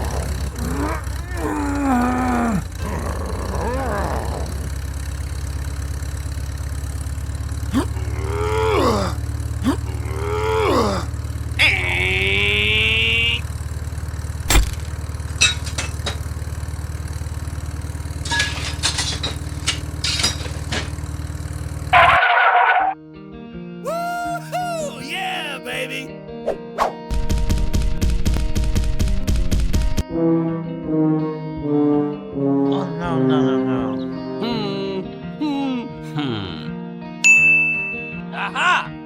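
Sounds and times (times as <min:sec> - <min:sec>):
low engine-like drone: 0:00.0 - 0:22.2.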